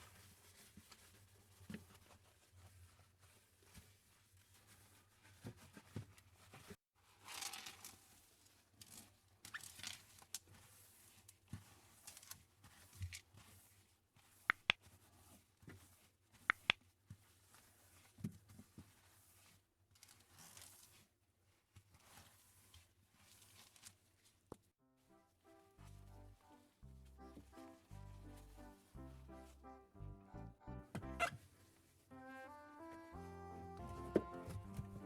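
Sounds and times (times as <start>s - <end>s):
rustles and scrapes: 0.0s - 24.7s.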